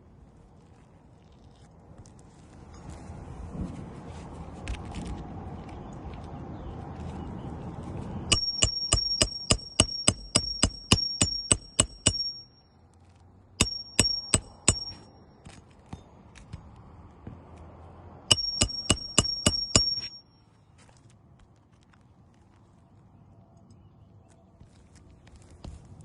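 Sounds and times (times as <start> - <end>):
sharp metallic taps: 8.3 - 12.6, 13.6 - 16.6, 18.3 - 20.3.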